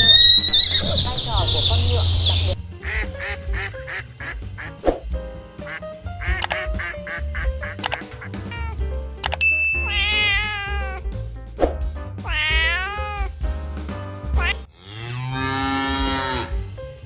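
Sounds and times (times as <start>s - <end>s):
cat meowing: 0.0s - 2.6s, 8.5s - 8.8s, 9.7s - 11.0s, 12.2s - 13.4s, 14.4s - 14.6s
background music with steady beat: 1.3s - 14.7s, 15.6s - 17.0s
cow mooing: 14.7s - 16.6s.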